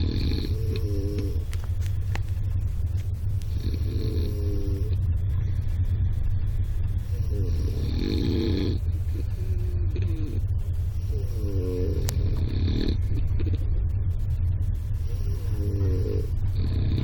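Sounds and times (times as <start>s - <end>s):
person snoring: 0.0s - 1.5s, 3.5s - 5.0s, 7.0s - 10.4s, 11.0s - 13.6s, 15.0s - 17.0s
low rumble of moving train: 0.0s - 17.0s.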